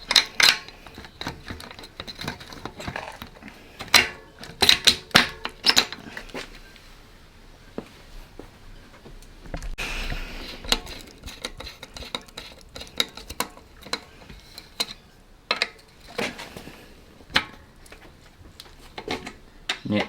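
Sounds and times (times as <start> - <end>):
bike parts and tools clinking: 0.0 - 6.7, 9.6 - 20.0.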